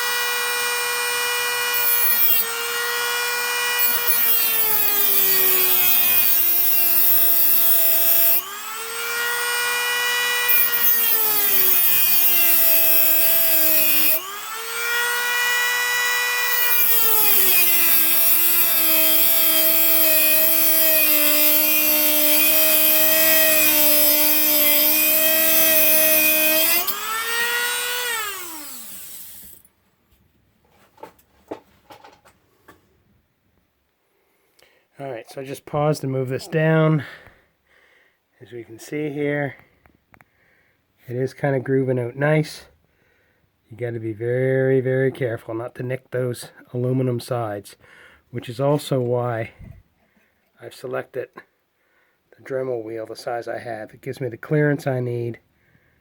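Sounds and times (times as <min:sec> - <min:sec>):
rotary tool grinding whine: 0:00.0 - 0:29.6.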